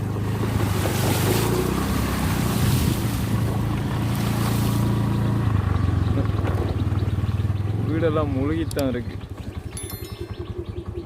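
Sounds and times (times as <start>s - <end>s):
vehicle engine running: 0.0s - 11.0s
wind buffeting microphone: 0.5s - 5.0s.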